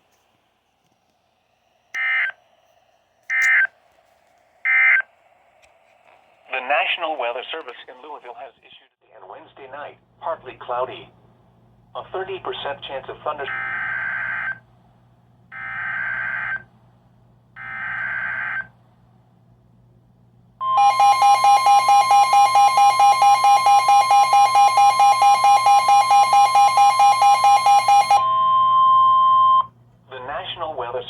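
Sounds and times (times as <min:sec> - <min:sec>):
loud pulsing beep: 0:20.6 - 0:29.7
steady warning alert tone: 0:20.7 - 0:28.4.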